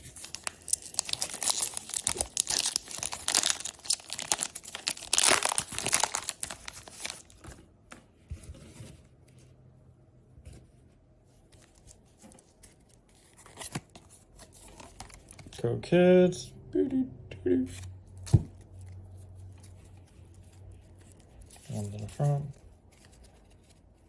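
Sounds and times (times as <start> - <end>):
foil wrapper tearing and crinkling: 0.1 - 7.3.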